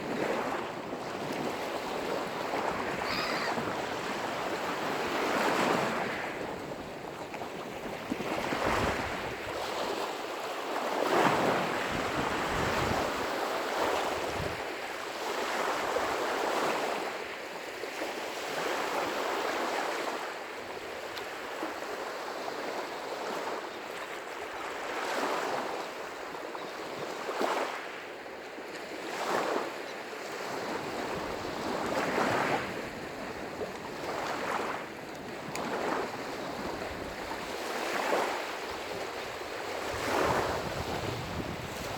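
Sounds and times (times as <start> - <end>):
small waves breaking on shore: 0.0 - 41.9
wind buffeting microphone: 38.8 - 41.9.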